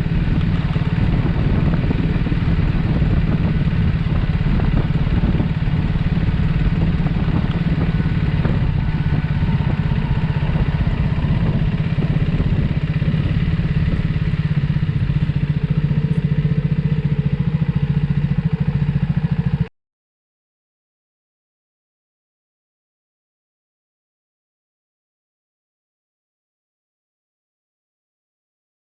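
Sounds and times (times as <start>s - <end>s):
motorcycle engine idling: 0.0s - 19.7s.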